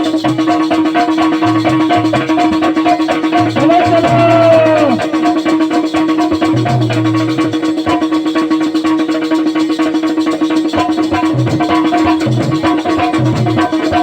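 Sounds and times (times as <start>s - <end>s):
rattling percussion: 0.0s - 14.0s
plucked strings: 1.0s - 7.9s
held drone: 3.2s - 6.1s.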